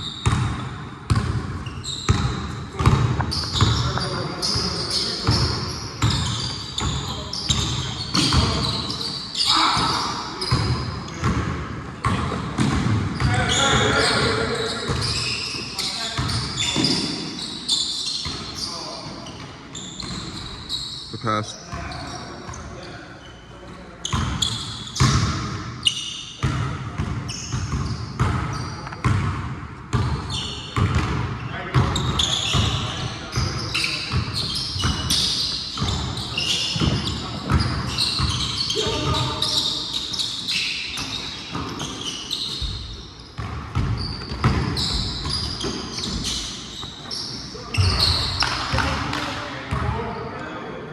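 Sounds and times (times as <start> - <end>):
sneakers squeaking: 0.0 - 50.6
basketball bouncing on hard court: 0.2 - 9.0, 10.5 - 14.2, 24.1 - 25.7, 26.4 - 39.5, 41.0 - 46.5.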